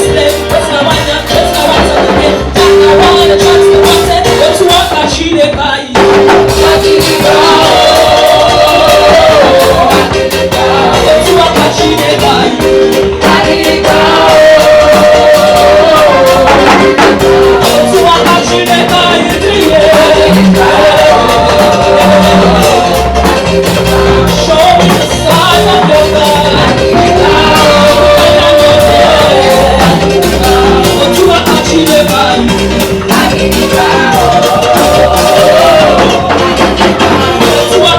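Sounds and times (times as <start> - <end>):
fast percussion beat: 0.0 - 37.9
person singing: 0.0 - 37.9.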